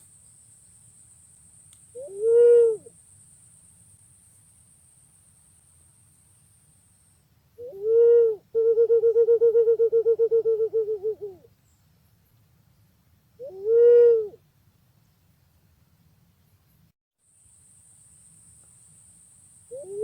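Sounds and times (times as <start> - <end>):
pigeon whistling call: 2.0 - 2.9, 7.6 - 11.3.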